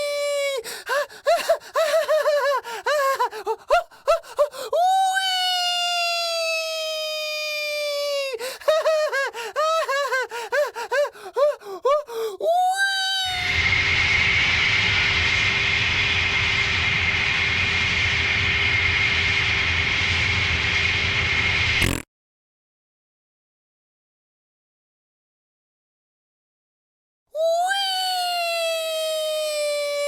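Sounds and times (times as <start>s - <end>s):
steady rushing noise: 13.6s - 22.0s.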